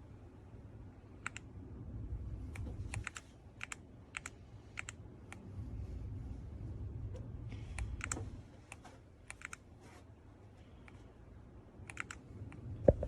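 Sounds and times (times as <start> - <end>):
mechanical keyboard key clicks: 11.9 - 12.2.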